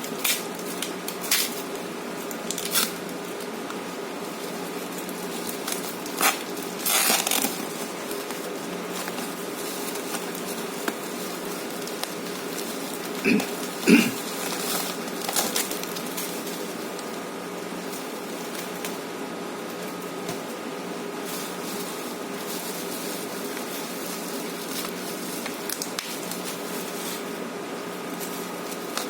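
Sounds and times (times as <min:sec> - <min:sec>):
packaging rustling: 0:04.4 - 0:17.2, 0:21.2 - 0:27.4.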